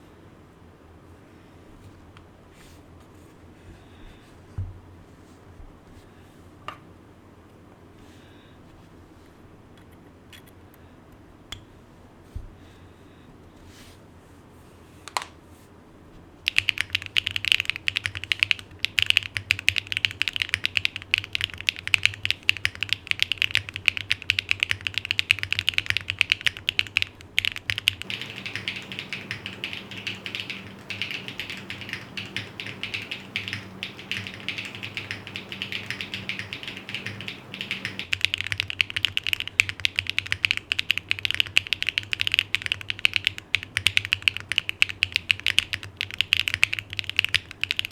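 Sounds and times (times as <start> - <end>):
mechanical keyboard typing: 16.5 - 47.9.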